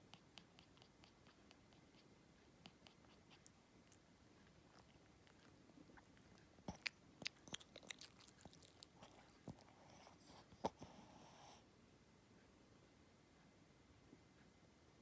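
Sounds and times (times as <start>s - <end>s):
dog chewing clicks and crunches: 6.7s - 9.7s.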